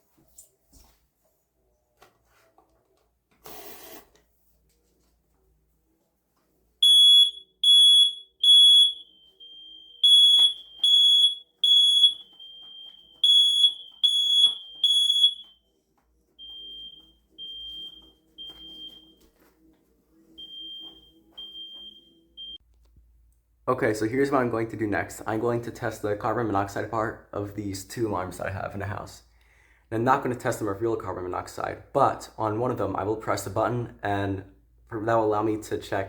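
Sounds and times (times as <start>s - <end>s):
smoke alarm beeping: 6.8s - 15.6s, 16.4s - 19.3s, 20.4s - 22.6s
faint distant alarm beeps: 6.8s - 15.7s, 16.4s - 19.3s, 20.4s - 22.6s.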